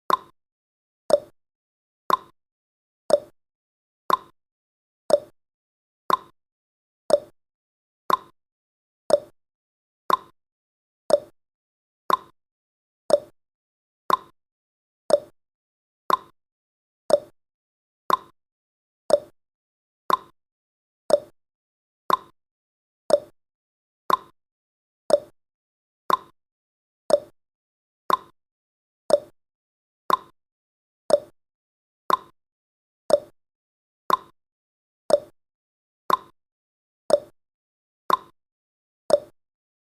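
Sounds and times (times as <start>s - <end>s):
clock ticking: 0.1s - 0.3s, 2.1s - 2.3s, 4.1s - 4.3s, 6.1s - 6.3s, 8.1s - 8.3s, 10.1s - 10.3s, 12.1s - 12.3s, 13.1s - 13.3s, 14.1s - 14.3s, 16.1s - 16.3s, 18.1s - 18.3s, 19.1s - 19.3s, 20.1s - 20.3s, 21.1s - 21.3s, 22.1s - 22.3s, 24.1s - 24.3s, 26.1s - 26.3s, 27.1s - 27.3s, 28.1s - 28.3s, 29.1s - 29.3s, 30.1s - 30.3s, 31.1s - 31.4s, 32.1s - 32.3s, 33.1s - 33.4s, 34.1s - 34.3s, 35.1s - 35.4s, 36.1s - 36.3s, 37.1s - 37.4s, 38.1s - 38.4s, 39.1s - 39.4s.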